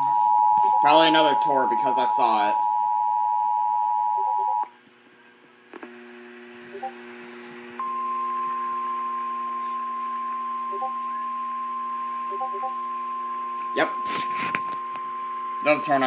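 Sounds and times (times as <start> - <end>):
low steady hum: 0.0 - 16.0
steady single-pitch alert tone: 7.8 - 16.0
two-tone attention signal: 7.8 - 16.0.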